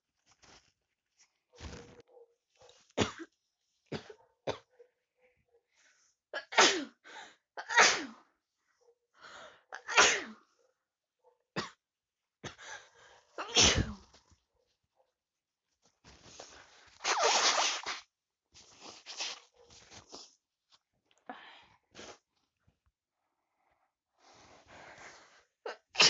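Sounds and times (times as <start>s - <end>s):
person sneezing: 13.4s - 14.0s
person sniffling and breathing: 21.3s - 22.4s, 24.2s - 25.6s.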